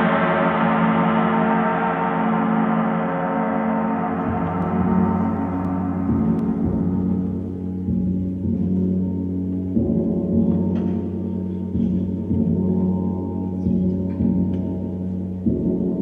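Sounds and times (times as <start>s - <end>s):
gong ringing: 0.0s - 14.5s.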